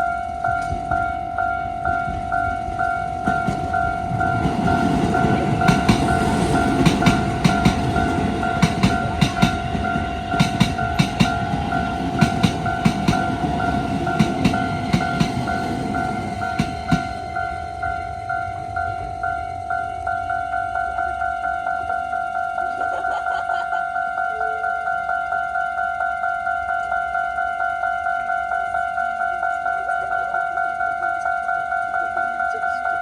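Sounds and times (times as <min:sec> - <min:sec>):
level-crossing electronic bell: 0:00.0 - 0:33.0
train wheels clacking over rail joints: 0:02.1 - 0:19.2.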